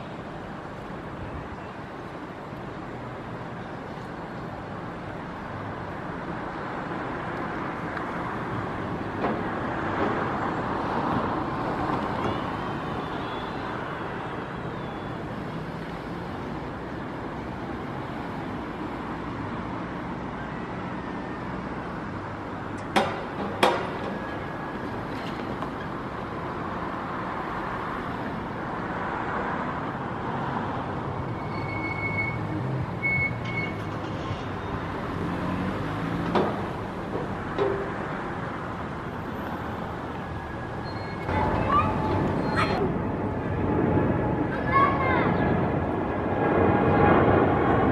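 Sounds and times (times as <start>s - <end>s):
distant jet engines running: 0.0s - 47.9s.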